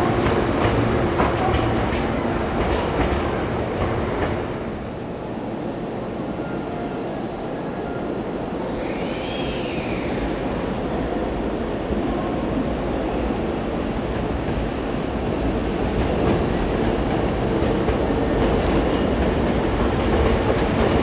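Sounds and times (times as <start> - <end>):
wheels clicking over rail joints: 0.0 - 5.1
electric train rumbling: 0.0 - 21.0
train whine: 0.0 - 21.0.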